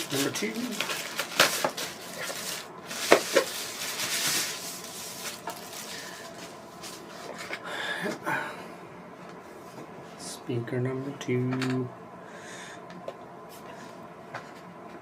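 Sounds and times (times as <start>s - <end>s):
wrapping and foam rustling: 0.0s - 7.3s.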